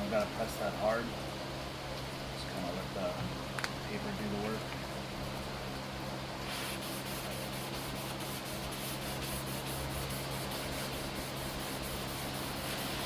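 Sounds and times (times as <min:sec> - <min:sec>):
steady low hum: 0:00.0 - 0:13.0
sandpaper rubbing on plastic: 0:06.4 - 0:13.0.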